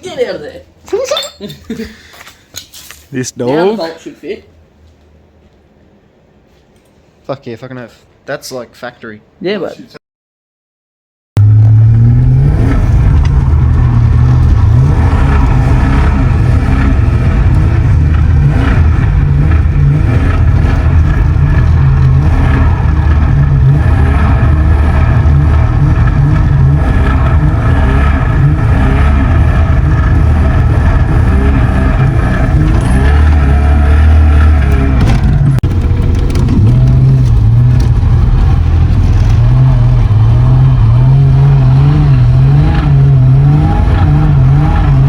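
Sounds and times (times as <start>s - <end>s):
car engine revving: 11.4s - 45.0s.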